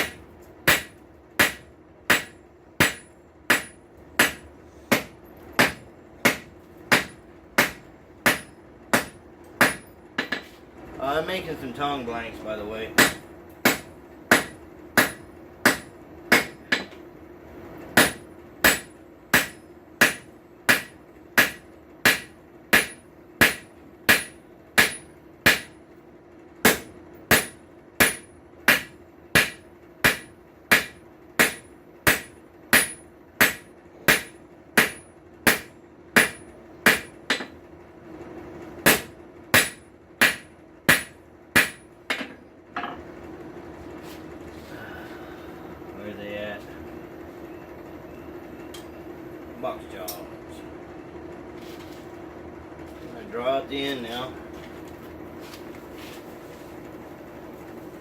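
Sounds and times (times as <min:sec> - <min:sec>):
hammer striking steel on anvil: 0:00.0 - 0:10.5, 0:13.0 - 0:17.0, 0:18.0 - 0:25.8, 0:26.6 - 0:37.6, 0:38.9 - 0:43.0
steady low hum: 0:00.0 - 0:58.0.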